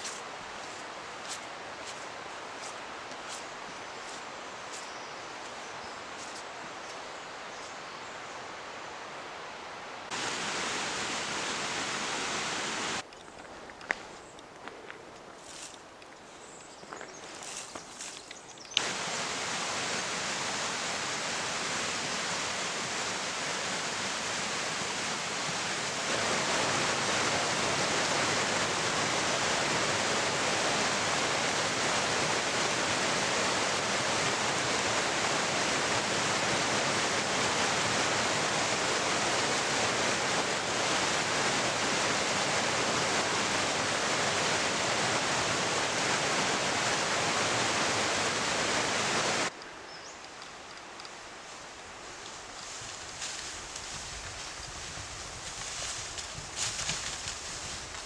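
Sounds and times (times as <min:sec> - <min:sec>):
water rushing: 0:08.5 - 0:13.0, 0:18.8 - 0:49.6.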